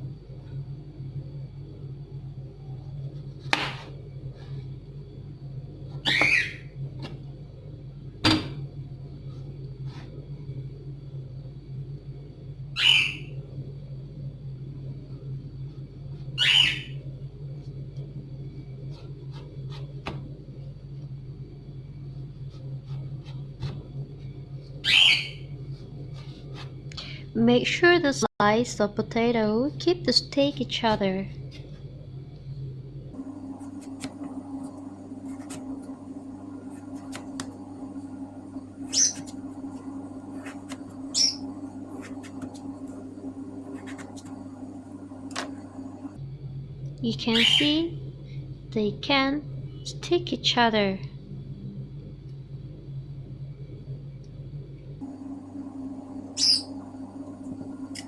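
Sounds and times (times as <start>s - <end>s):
steady low hum: 0.0s - 58.0s
bird squawking: 6.0s - 6.7s, 12.8s - 13.3s, 16.4s - 17.0s, 24.8s - 25.4s, 38.8s - 39.4s, 40.4s - 42.1s, 47.3s - 47.8s, 56.3s - 56.8s.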